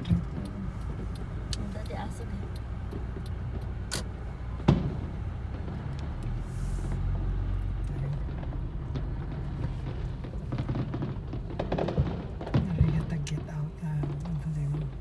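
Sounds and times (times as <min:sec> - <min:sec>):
light clicks and pops: 0:00.0 - 0:11.1
car road rumble from cabin: 0:00.0 - 0:15.0
sharp bang: 0:04.6 - 0:05.9.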